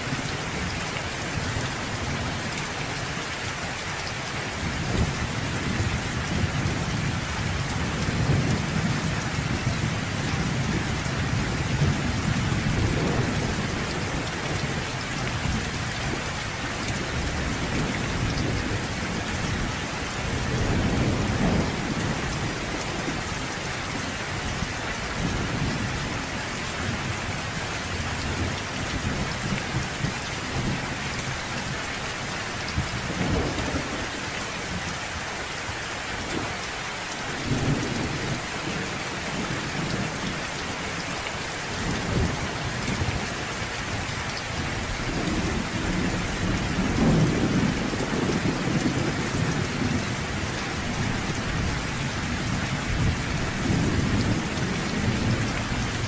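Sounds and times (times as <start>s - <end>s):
heavy rain falling: 0.0s - 56.0s
thunder rumbling: 4.6s - 16.2s, 17.0s - 23.4s, 32.7s - 34.2s, 44.8s - 56.0s.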